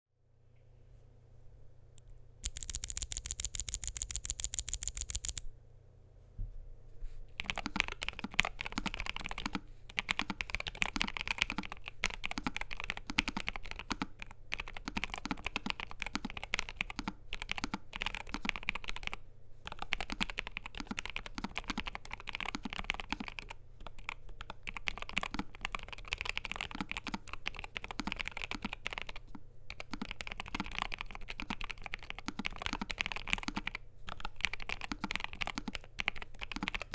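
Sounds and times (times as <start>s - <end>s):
mechanical keyboard typing: 2.4s - 5.5s, 7.4s - 36.9s
sharp clicks: 2.4s - 5.5s.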